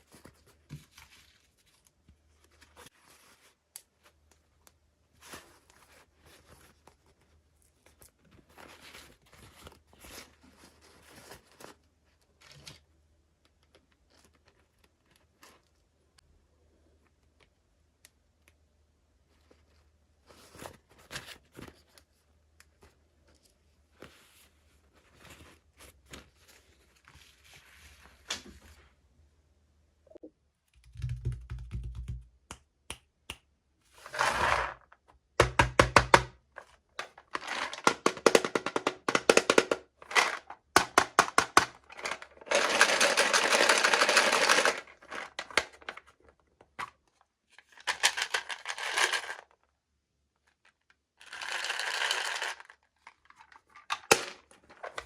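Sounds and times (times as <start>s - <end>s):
packaging clicks and taps: 37.0s - 46.1s
packaging rustling and crinkling: 41.8s - 46.2s.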